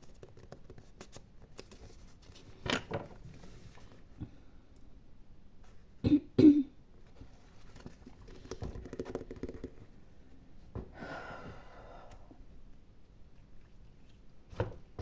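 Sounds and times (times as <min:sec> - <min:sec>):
faint scratching and tapping: 0:00.0 - 0:02.6, 0:07.1 - 0:10.0
person coughing: 0:06.0 - 0:06.8.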